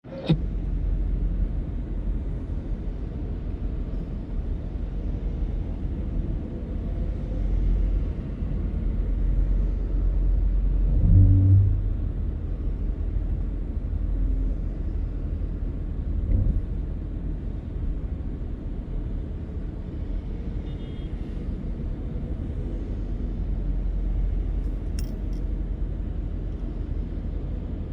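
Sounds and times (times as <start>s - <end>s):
trucks rumbling on road: 0.0s - 27.9s.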